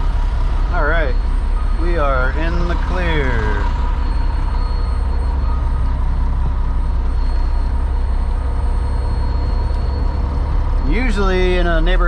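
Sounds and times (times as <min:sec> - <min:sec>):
diesel engine rumbling: 0:00.0 - 0:12.0.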